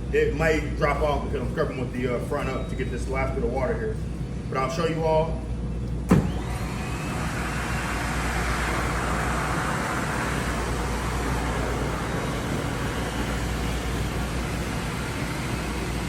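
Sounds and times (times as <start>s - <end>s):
floor scrubber motor whirring: 6.1s - 16.0s.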